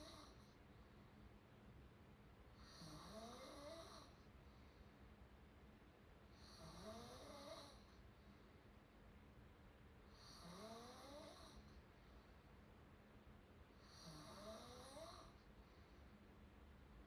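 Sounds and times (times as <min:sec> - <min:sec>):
faint open-mouthed snoring: 0:02.6 - 0:04.2, 0:06.4 - 0:07.9, 0:10.1 - 0:11.7, 0:13.8 - 0:15.4.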